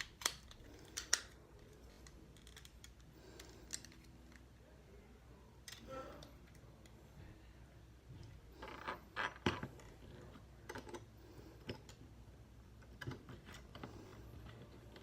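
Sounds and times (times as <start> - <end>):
plastic toy joints clicking: 0.0 - 1.4.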